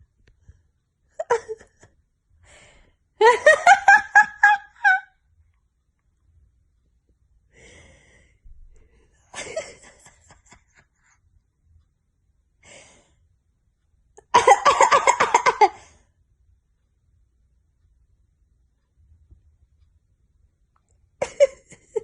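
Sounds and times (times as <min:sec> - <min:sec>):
breaths: 0:02.4 - 0:03.1, 0:07.5 - 0:09.3, 0:12.6 - 0:13.3
woman coughing: 0:14.4 - 0:15.8.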